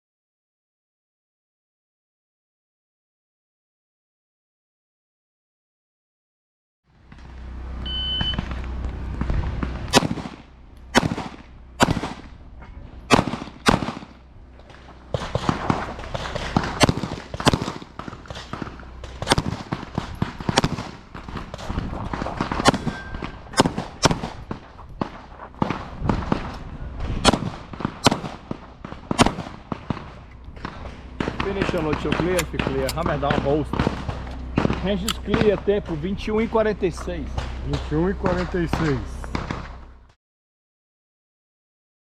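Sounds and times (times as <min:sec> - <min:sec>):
shooter movement noise: 0:07.2 - 0:40.0
electronic beep: 0:07.8 - 0:08.4
pistol shots: 0:09.6 - 0:12.4, 0:13.1 - 0:14.3, 0:15.0 - 0:26.6, 0:27.2 - 0:36.0.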